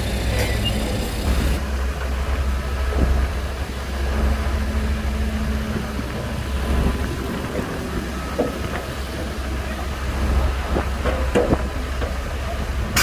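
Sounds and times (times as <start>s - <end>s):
bulldozer diesel engine rumbling: 0.0s - 13.0s.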